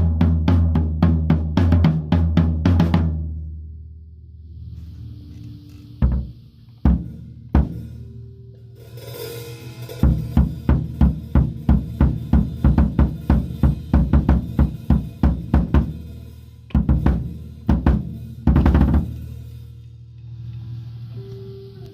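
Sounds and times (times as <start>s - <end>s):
drum hits: 0.0s - 3.3s, 6.0s - 8.2s, 10.0s - 19.5s
drum roll: 0.0s - 3.3s, 6.0s - 8.3s, 8.9s - 19.9s
cymbal crash: 4.1s - 21.9s.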